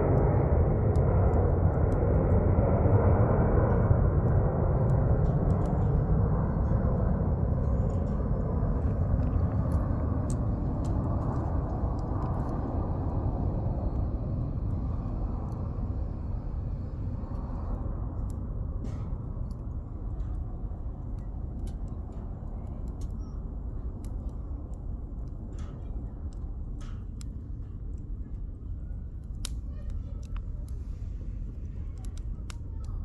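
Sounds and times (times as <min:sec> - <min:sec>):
distant engine rumble: 0:00.0 - 0:20.4
campfire crackling: 0:00.0 - 0:33.0.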